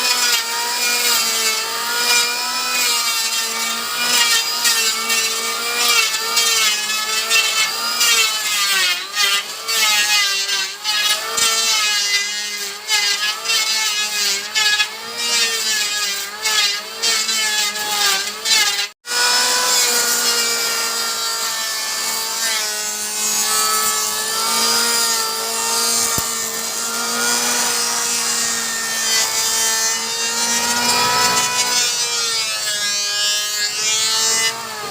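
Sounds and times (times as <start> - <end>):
rasping of shavings: 0.0 - 34.9
electric planer motor whine: 11.9 - 34.9.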